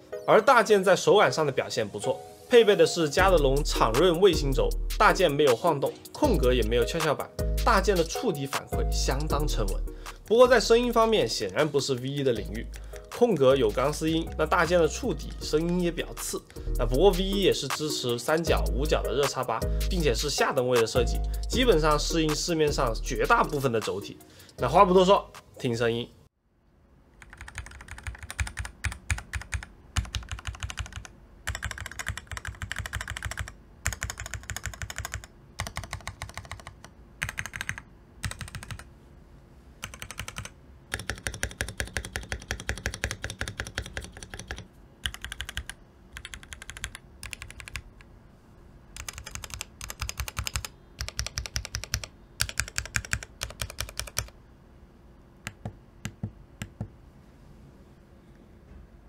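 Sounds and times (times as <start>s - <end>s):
mechanical keyboard typing: 27.2s - 38.9s, 39.8s - 48.1s, 49.0s - 54.4s.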